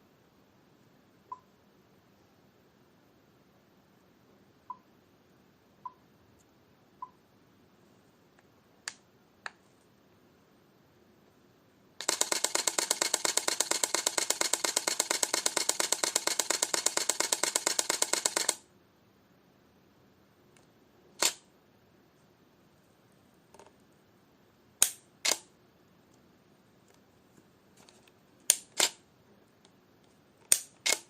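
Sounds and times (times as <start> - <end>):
camera shutter clicks: 12.0 - 18.6, 21.2 - 21.4, 24.8 - 25.5, 28.5 - 29.0, 30.5 - 31.0
rapid shutter burst: 12.0 - 18.6, 21.2 - 21.4, 30.5 - 31.0.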